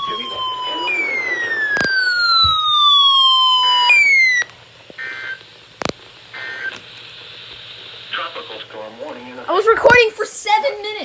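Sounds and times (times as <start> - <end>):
electronic siren alert tone: 0.0 - 4.5.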